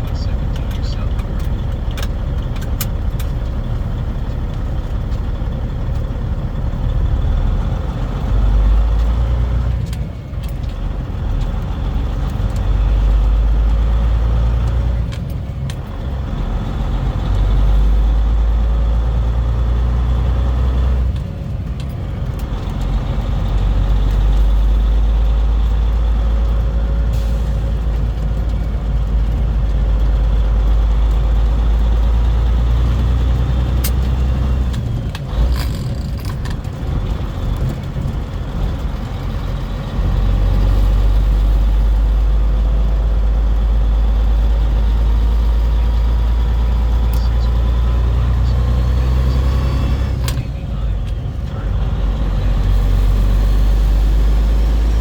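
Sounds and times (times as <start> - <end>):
truck engine droning: 0.0 - 55.0.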